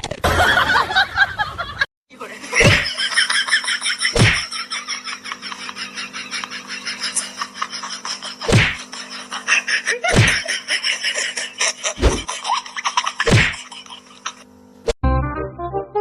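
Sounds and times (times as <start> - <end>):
steady hum: 2.2 - 15.0
heavy thwacks: 2.6 - 2.9, 4.2 - 4.4, 8.4 - 8.8, 10.1 - 10.4, 12.0 - 12.3, 13.3 - 13.6.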